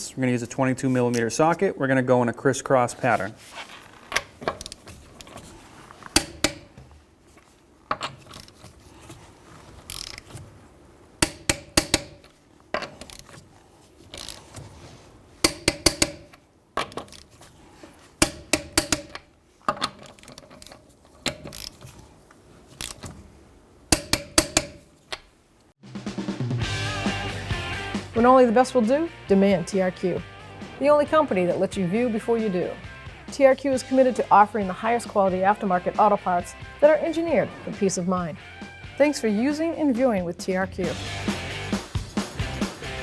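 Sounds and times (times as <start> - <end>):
torque wrench ratcheting clicks: 11.2 - 12.2, 15.5 - 16.3.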